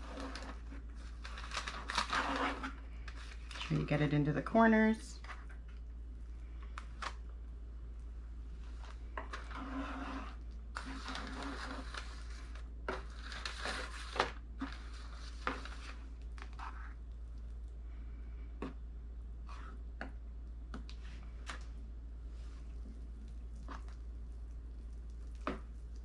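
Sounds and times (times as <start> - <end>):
spatula scraping fudge in pan: 0.0 - 3.9, 8.7 - 17.0, 19.4 - 20.2.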